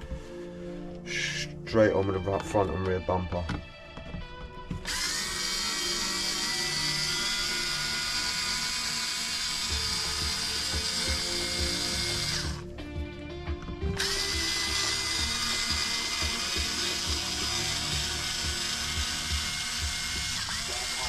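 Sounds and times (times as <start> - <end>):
background music with low beat: 0.0 - 21.0
electric screwdriver running: 4.8 - 12.7, 13.9 - 21.0.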